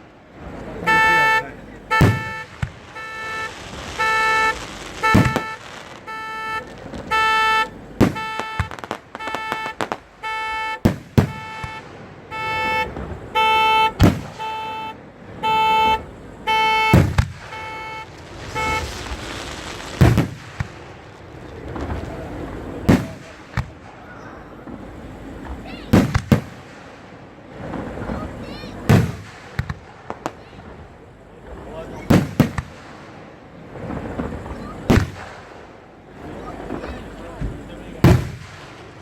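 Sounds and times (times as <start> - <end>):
firework bangs: 0.0 - 39.0
car alarm honking: 0.8 - 19.0.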